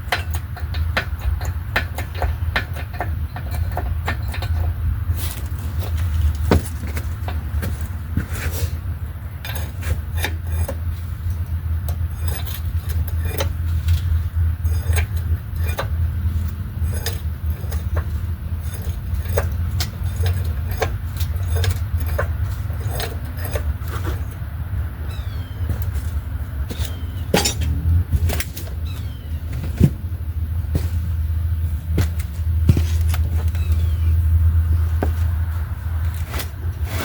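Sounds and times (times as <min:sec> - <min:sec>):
light metal clinks and knocks: 0:00.0 - 0:08.3, 0:25.7 - 0:29.9
steady low rumble: 0:03.1 - 0:36.9.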